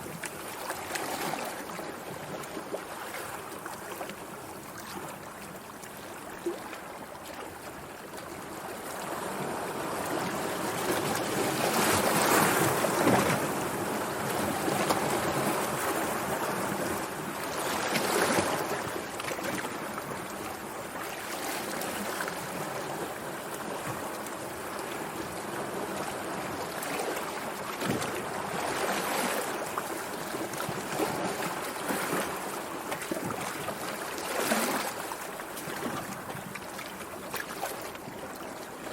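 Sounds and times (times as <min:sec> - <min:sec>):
sea waves breaking: 0:00.0 - 0:04.1, 0:08.7 - 0:38.9.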